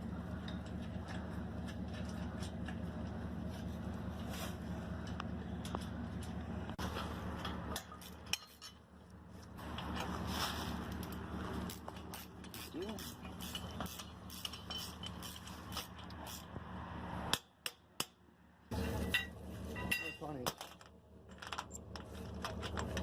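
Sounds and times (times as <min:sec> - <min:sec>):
steady low hum: 0:00.0 - 0:17.4
metal parts clinking: 0:07.7 - 0:08.8, 0:11.0 - 0:16.5, 0:18.7 - 0:23.0.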